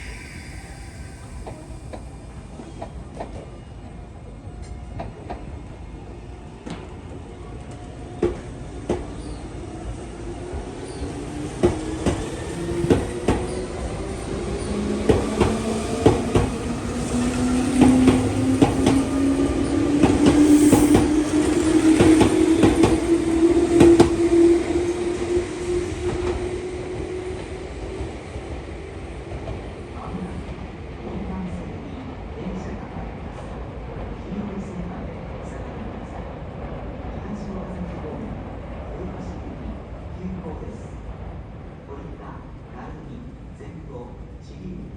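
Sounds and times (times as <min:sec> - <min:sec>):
electric train motors humming: 0:00.0 - 0:03.0, 0:11.8 - 0:24.2.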